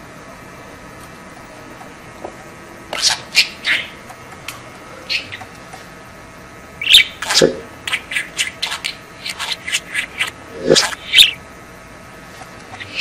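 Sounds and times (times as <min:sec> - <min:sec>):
budgerigar chirping: 0:03.0 - 0:04.0, 0:05.0 - 0:05.5, 0:06.8 - 0:11.4.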